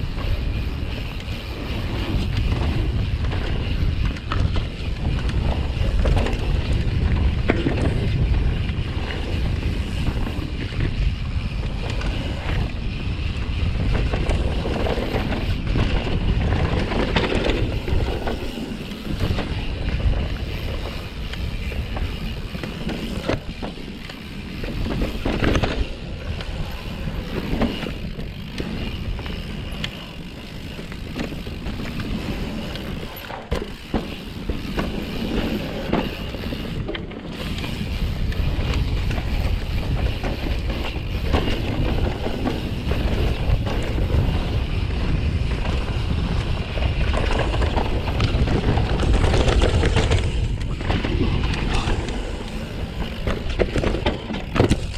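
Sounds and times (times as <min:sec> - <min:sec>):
bike knocks and rattles: 0:00.0 - 0:54.9
bike tyre noise: 0:00.0 - 0:54.9
wind rumbling on microphone: 0:00.0 - 0:54.9.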